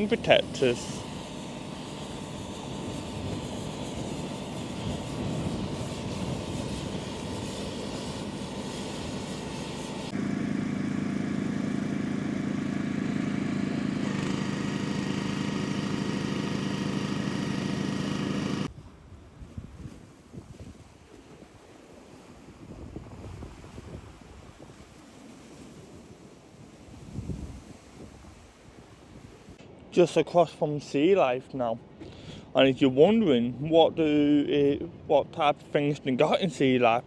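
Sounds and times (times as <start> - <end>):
engine humming: 0.0 - 18.7.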